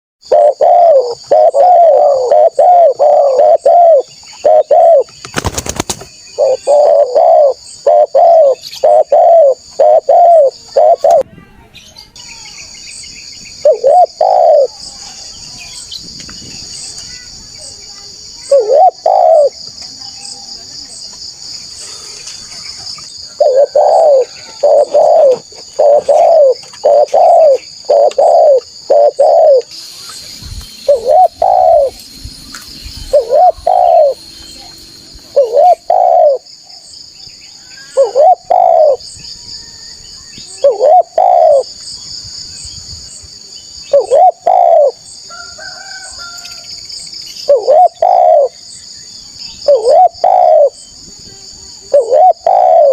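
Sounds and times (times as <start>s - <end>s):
dove cooing: 0.2s - 5.1s, 6.3s - 11.2s, 13.6s - 14.8s, 18.4s - 19.6s, 23.2s - 29.7s, 30.9s - 32.0s, 33.0s - 34.2s, 35.3s - 36.5s, 37.9s - 39.0s, 40.5s - 41.6s, 43.9s - 45.0s, 47.5s - 48.6s, 49.7s - 50.8s, 51.8s - 52.9s
steady high-pitched hiss: 0.3s - 52.9s.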